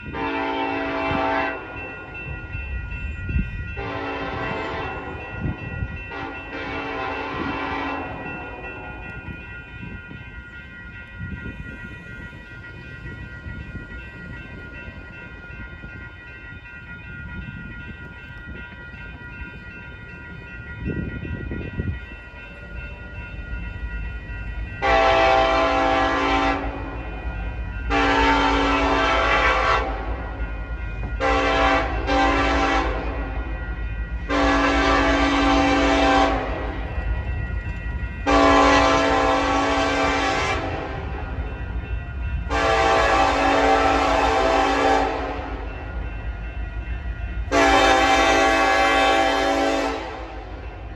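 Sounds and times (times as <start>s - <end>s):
train air horn blasts: 0.1s - 1.8s, 3.8s - 5.3s, 6.1s - 9.0s, 24.8s - 27.0s, 27.9s - 30.2s, 31.2s - 33.4s, 34.3s - 36.8s, 38.2s - 41.2s, 42.5s - 45.7s, 47.5s - 50.6s.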